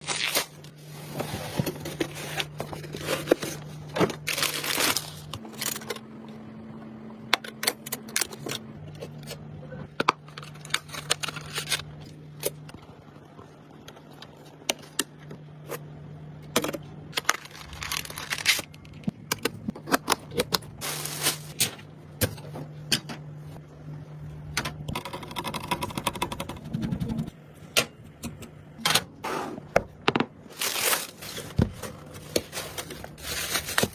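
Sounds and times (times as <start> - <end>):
steady low hum: 0.4 - 33.9
plastic crackling: 17.1 - 19.1, 30.5 - 33.9.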